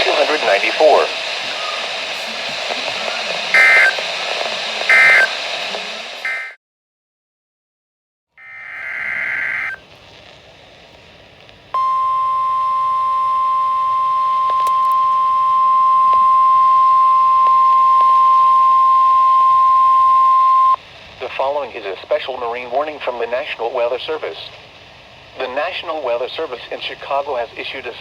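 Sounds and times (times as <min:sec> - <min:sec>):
steady single-pitched alarm tone: 0:03.6 - 0:04.0, 0:04.9 - 0:05.3, 0:06.2 - 0:06.6, 0:08.4 - 0:09.8, 0:11.8 - 0:20.8
warbling digital data tones: 0:03.6 - 0:04.0, 0:04.9 - 0:05.3, 0:06.2 - 0:06.6, 0:08.4 - 0:09.8.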